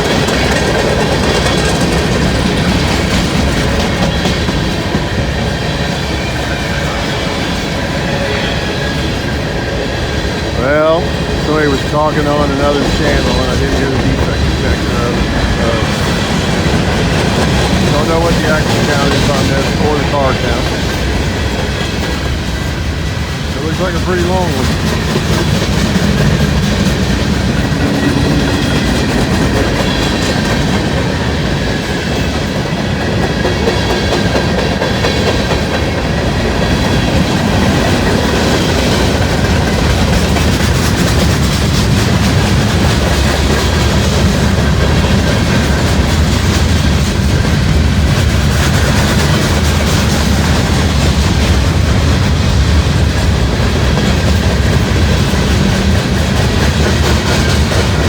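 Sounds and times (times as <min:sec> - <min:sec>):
wheels clicking over rail joints: 0:00.0 - 0:05.6
freight train cars rolling: 0:00.0 - 0:58.0.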